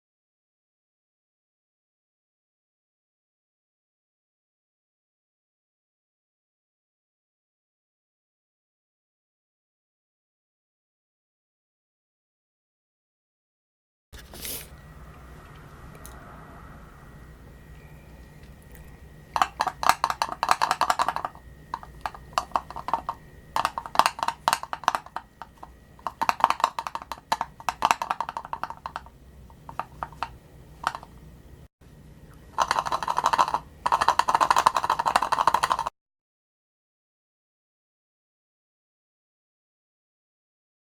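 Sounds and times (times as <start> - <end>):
motorcycle mirror rattling: 19.4 - 29.1, 29.7 - 31.1.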